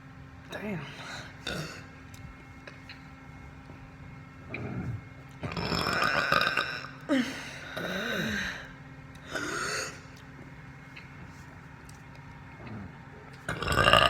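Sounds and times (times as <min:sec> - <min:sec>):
person burping: 0:01.4 - 0:01.9, 0:04.5 - 0:08.5, 0:12.6 - 0:14.0.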